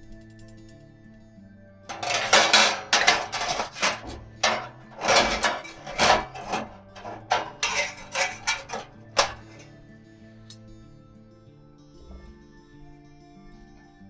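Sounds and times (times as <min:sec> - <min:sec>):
metal cookware clattering: 0:01.9 - 0:09.7.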